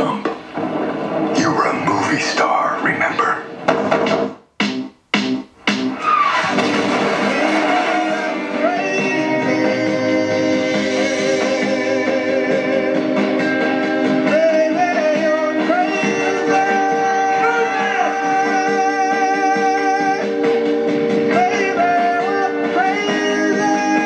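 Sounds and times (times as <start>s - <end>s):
guitar: 2.9s - 24.0s
person singing: 7.0s - 24.0s.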